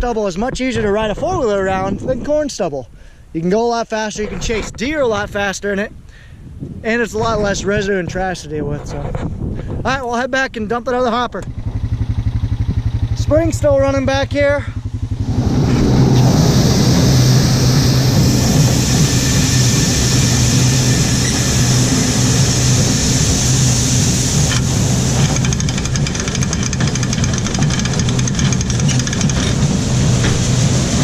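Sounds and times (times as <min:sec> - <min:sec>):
wind on microphone: 0:00.4 - 0:02.5, 0:04.3 - 0:10.1, 0:15.1 - 0:25.8
four-wheeler engine running: 0:11.4 - 0:31.0
fast rattle of ticks: 0:24.4 - 0:29.6.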